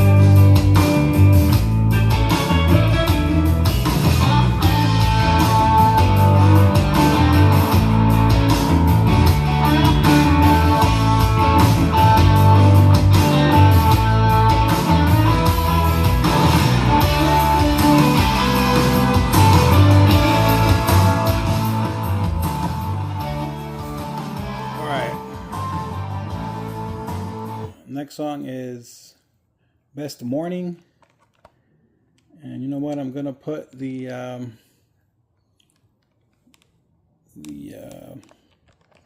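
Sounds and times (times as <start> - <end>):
heavy bass line: 0.0 - 27.7
blues music with electric guitar: 0.0 - 27.8.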